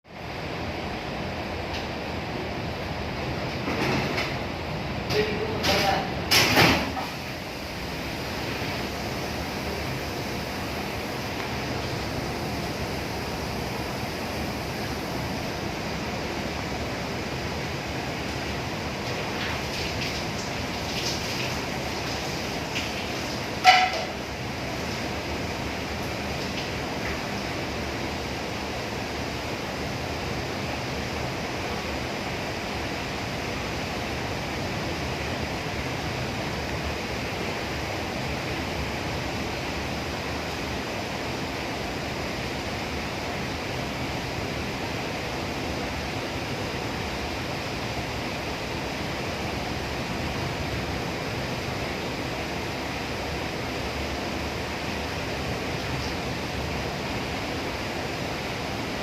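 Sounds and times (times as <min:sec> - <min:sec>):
commercial dishwasher running: 0:03.3 - 0:10.9, 0:19.0 - 0:25.2.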